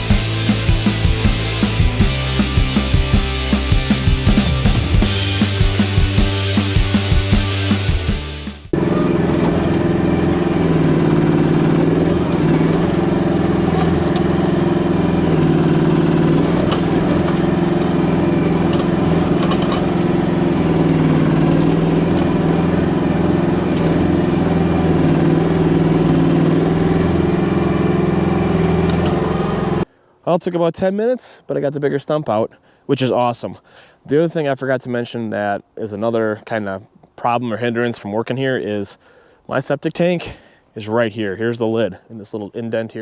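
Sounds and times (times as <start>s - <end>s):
small excavator engine running: 0.0s - 29.9s.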